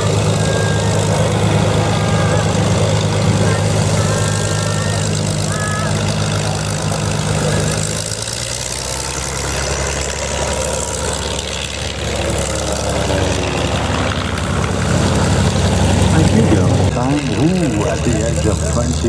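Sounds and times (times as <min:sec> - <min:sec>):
aircraft engines droning: 0:00.0 - 0:19.0.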